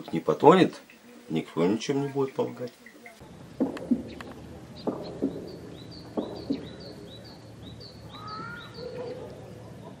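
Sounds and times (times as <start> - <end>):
small bird chirping: 1.8 - 10.0
low bird call: 2.8 - 10.0
sharp knocks: 3.6 - 6.9.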